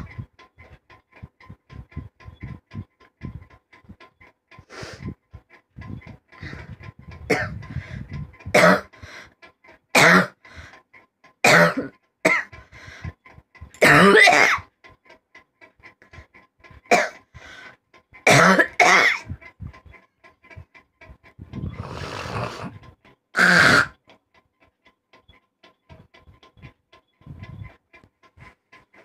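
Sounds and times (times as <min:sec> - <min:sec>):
person coughing: 0:07.3 - 0:07.6, 0:08.6 - 0:08.9, 0:11.5 - 0:12.5, 0:13.8 - 0:14.6, 0:18.3 - 0:19.2.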